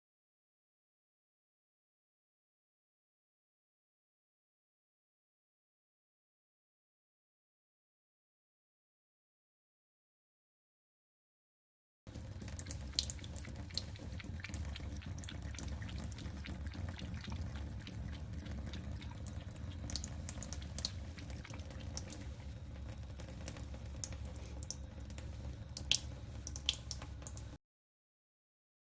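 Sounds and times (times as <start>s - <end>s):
tap water running into sink: 12.1s - 27.6s
water splashes and drips: 12.1s - 27.6s.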